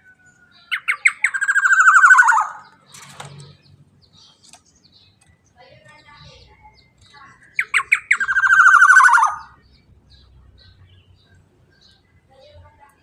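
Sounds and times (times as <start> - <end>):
oriole calling: 0.0 - 2.8, 7.6 - 9.6
faint bird chirps: 0.0 - 13.0.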